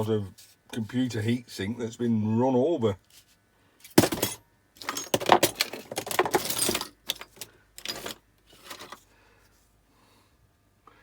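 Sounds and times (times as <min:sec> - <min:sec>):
scrap metal clinking and rattling: 0:03.9 - 0:09.0.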